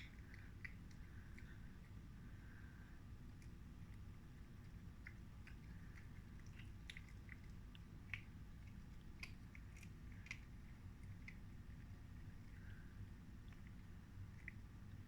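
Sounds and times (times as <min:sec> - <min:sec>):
cat chewing crunchy bites: 0:03.1 - 0:14.9.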